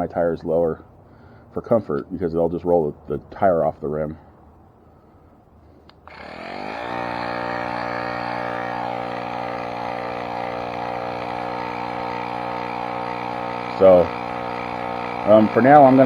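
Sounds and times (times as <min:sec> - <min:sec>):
electric tire pump motor running: 0:06.0 - 0:16.0.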